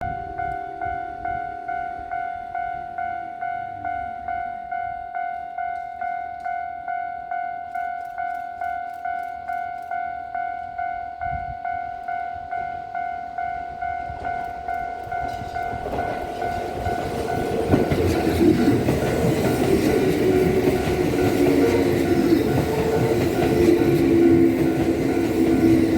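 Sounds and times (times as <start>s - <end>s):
crossing warning bell dinging: 0.0s - 25.9s
train wheels clattering over rails: 15.0s - 25.9s.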